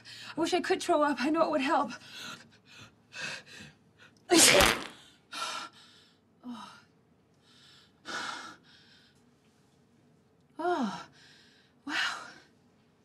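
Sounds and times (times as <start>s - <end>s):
person sneezing: 4.3s - 5.0s.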